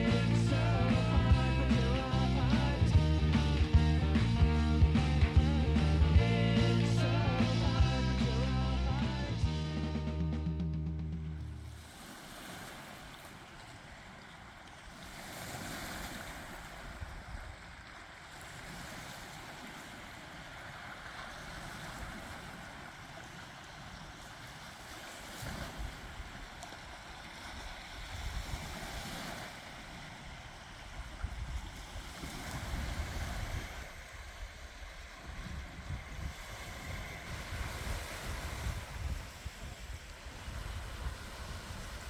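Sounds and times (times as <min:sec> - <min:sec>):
waves washing onto shore: 0:11.4 - 0:42.0
wind gusting on microphone: 0:27.5 - 0:42.0.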